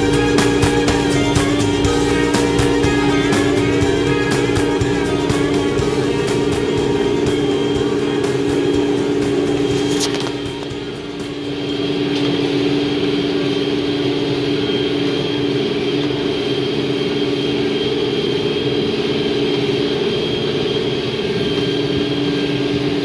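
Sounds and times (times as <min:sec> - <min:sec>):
tractor diesel engine running: 0:00.0 - 0:14.4
high whine: 0:00.0 - 0:23.0.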